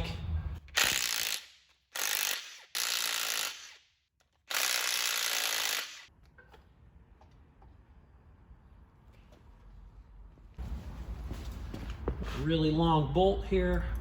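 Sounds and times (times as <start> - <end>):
power ratchet running: 0.8 - 1.4, 2.0 - 3.7, 4.5 - 6.1.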